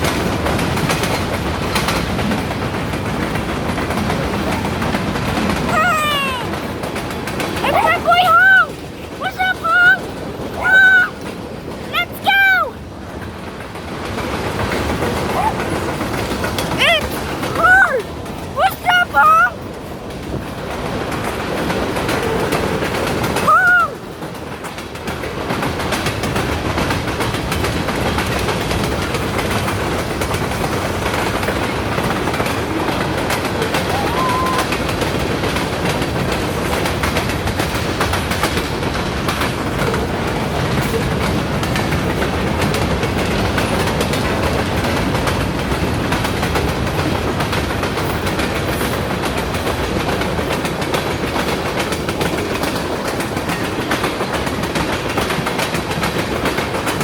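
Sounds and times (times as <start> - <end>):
train wheels rumbling on rails: 0.0 - 57.0.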